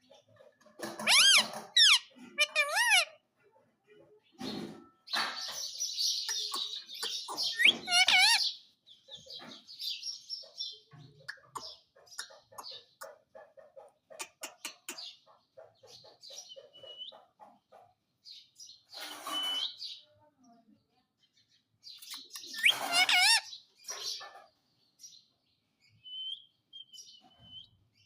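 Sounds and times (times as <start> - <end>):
parrot clicking and chattering: 0.8 - 3.1, 14.1 - 15.1
parrot calling harshly: 1.0 - 3.2, 7.5 - 8.4, 22.4 - 23.5
parrot whistles: 19.2 - 19.8, 22.6 - 23.4.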